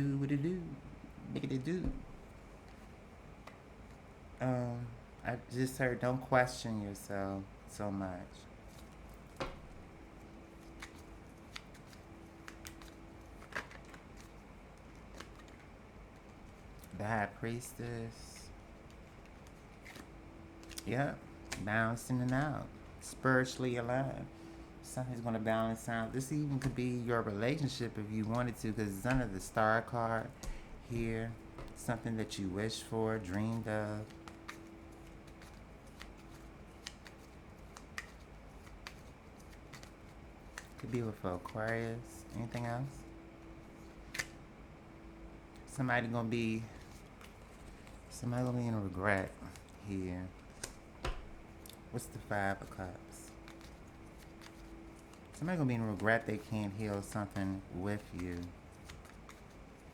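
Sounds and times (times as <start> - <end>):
faint steady hum: 0.0 - 59.9
cards snapping and sliding: 10.6 - 17.7, 18.8 - 22.6, 25.8 - 43.0, 44.1 - 44.4, 50.4 - 59.6.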